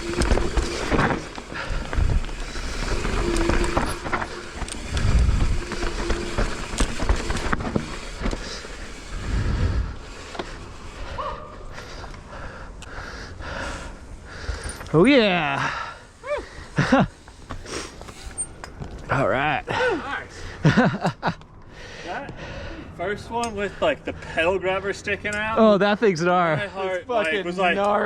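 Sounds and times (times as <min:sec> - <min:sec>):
wind on microphone: 0:00.0 - 0:06.5, 0:09.2 - 0:10.0
bike knocks and rattles: 0:00.0 - 0:09.0
bike tyres on dirt: 0:00.0 - 0:26.8.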